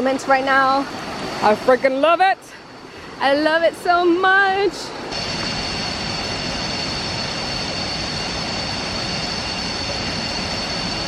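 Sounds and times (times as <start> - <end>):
high-pitched whine: 5.1 - 11.0.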